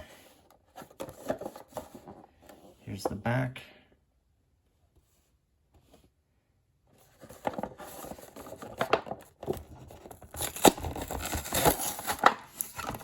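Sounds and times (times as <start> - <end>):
cardboard and plastic tearing: 7.1 - 13.0.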